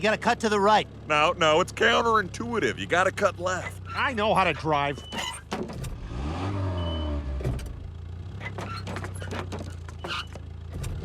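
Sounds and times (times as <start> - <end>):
vehicle engine revving: 5.8 - 9.3.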